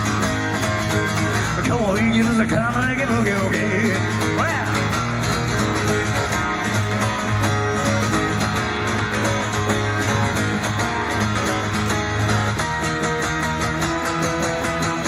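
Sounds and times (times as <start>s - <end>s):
rock band playing: 0.0s - 15.0s
strummed guitar: 0.0s - 15.0s.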